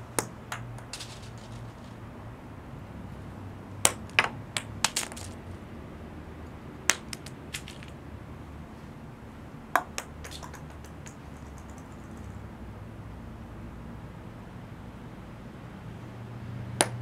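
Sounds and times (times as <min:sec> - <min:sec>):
acorns clacking on stone paving: 0:00.0 - 0:02.0, 0:03.8 - 0:05.5, 0:06.8 - 0:08.0, 0:09.8 - 0:12.4.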